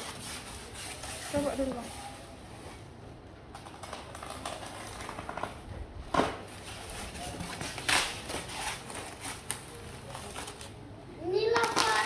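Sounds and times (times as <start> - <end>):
packaging scrapes and crackles: 3.5 - 5.7, 6.4 - 10.8.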